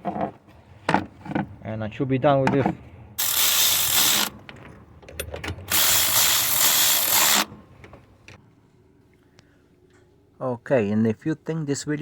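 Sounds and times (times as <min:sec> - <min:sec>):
power ratchet spinning: 0:03.2 - 0:04.3, 0:05.7 - 0:07.5.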